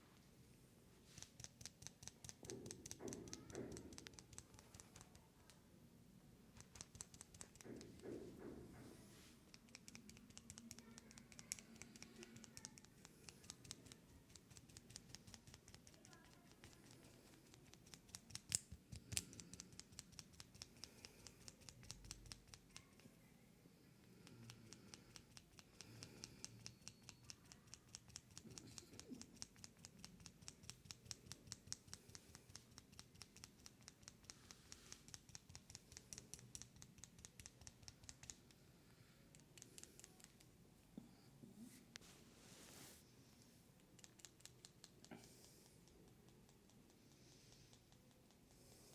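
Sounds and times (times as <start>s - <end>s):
fast crisp clicking: 1.2s - 5.2s, 6.6s - 8.0s, 9.5s - 23.0s, 43.8s - 48.9s.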